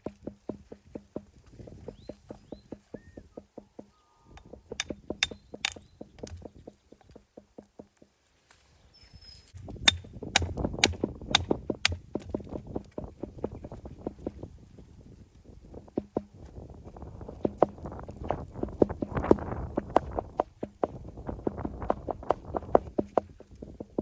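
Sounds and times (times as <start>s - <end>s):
hammer striking stone: 4.8s - 6.4s, 9.9s - 12.2s.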